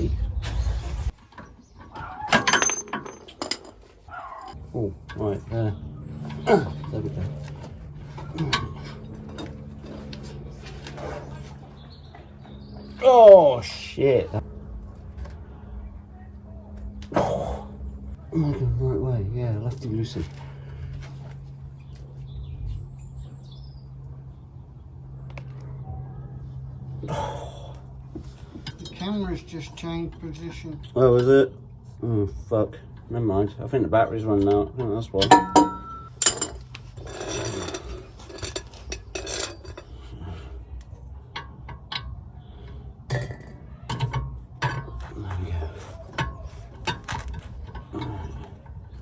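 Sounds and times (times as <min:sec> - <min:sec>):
metal tools clinking: 0:02.0 - 0:11.6, 0:28.3 - 0:31.3, 0:35.2 - 0:40.6, 0:41.3 - 0:49.0.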